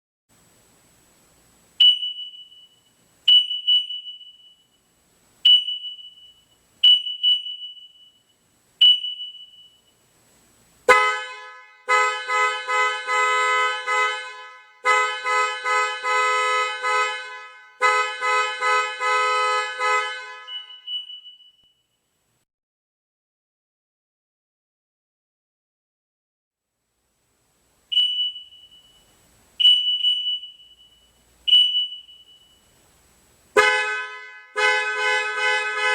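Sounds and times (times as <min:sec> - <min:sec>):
car alarm horn pulsing: 0:01.8 - 0:10.0, 0:10.9 - 0:22.0, 0:27.9 - 0:32.8, 0:33.5 - 0:35.9
car alarm chirps: 0:01.8 - 0:10.1, 0:10.9 - 0:22.2, 0:27.9 - 0:32.8, 0:33.6 - 0:35.9.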